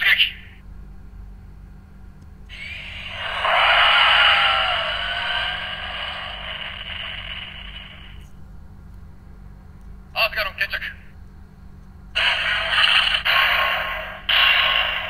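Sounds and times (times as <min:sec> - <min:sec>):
toy electronic cry: 0:02.5 - 0:06.8, 0:12.2 - 0:15.0.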